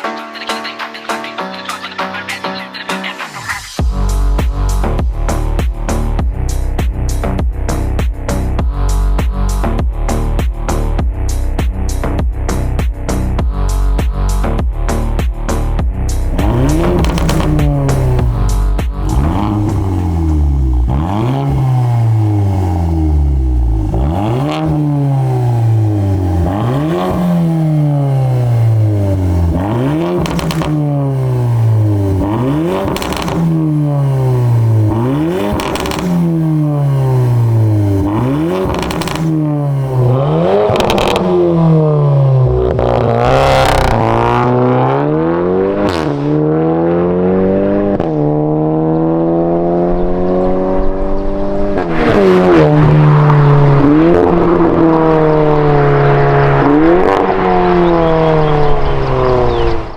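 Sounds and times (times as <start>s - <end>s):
car engine revving: 3.1s - 59.9s
exhaust cracks: 15.8s - 46.5s, 49.8s - 59.9s
car accelerating hard: 16.1s - 59.9s.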